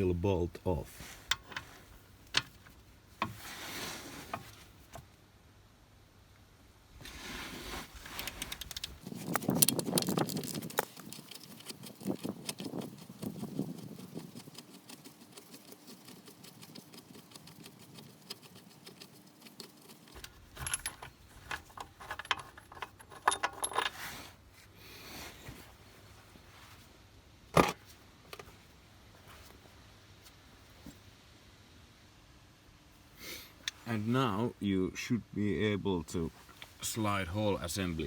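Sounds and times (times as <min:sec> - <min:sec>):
metal tools clinking on steel: 0:20.2 - 0:24.0.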